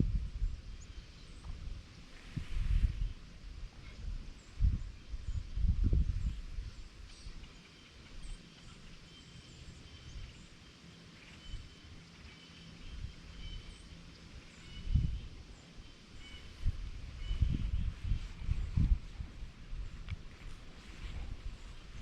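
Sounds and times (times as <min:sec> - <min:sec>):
wind buffeting microphone: 0:00.0 - 0:07.6, 0:14.4 - 0:22.0
small birds chirping: 0:00.3 - 0:22.0.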